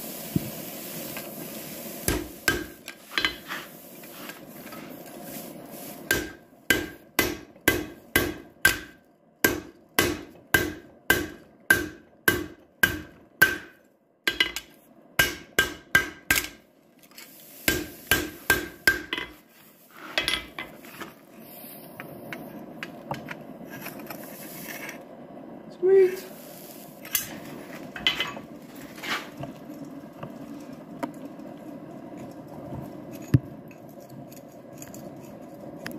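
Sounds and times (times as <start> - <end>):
low steady rush: 0.0 - 12.4, 13.0 - 35.9
hammer striking steel on anvil: 2.1 - 3.4, 6.1 - 16.6, 17.7 - 19.4.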